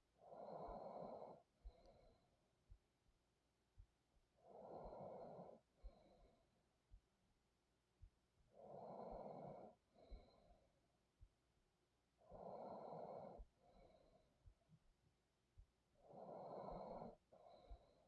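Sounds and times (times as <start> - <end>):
person breathing deeply: 0.2 - 2.3, 4.4 - 6.4, 16.0 - 18.0.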